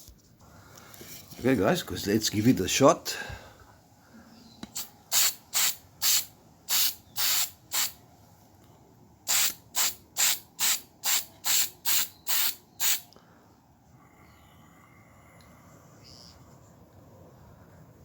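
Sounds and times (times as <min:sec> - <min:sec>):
spray paint can hissing: 0:04.7 - 0:08.0, 0:09.3 - 0:13.1.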